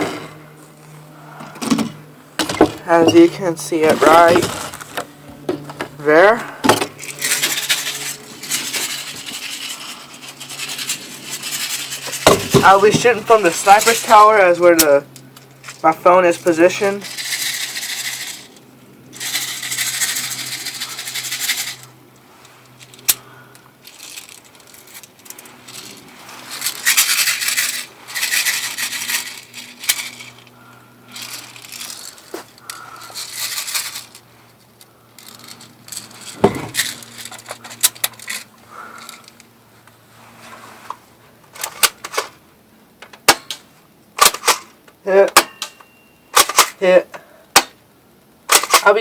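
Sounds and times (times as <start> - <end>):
metallic rattling and clinking: 5.6 - 14.2, 17.0 - 39.4.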